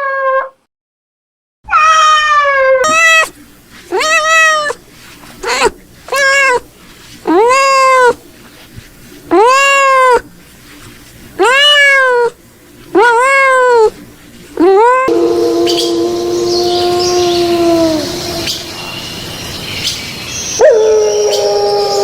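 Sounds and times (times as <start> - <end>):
cat meowing: 0.0 - 0.6, 1.7 - 4.8, 5.4 - 6.6, 7.3 - 8.2, 9.3 - 10.3, 11.4 - 12.4, 13.0 - 14.0, 14.6 - 18.8.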